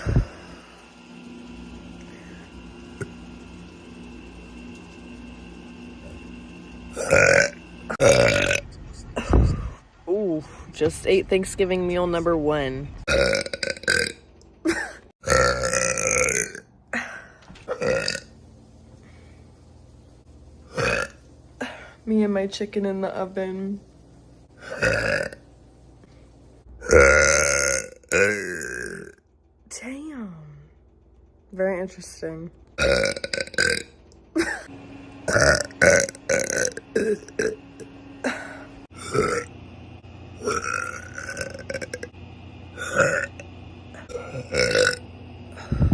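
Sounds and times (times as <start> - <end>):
woman burping: 7.0 - 8.6, 13.1 - 18.3, 24.6 - 25.4, 26.8 - 29.1, 32.8 - 34.7, 35.3 - 39.5, 40.4 - 42.1, 42.8 - 43.4, 44.0 - 45.0.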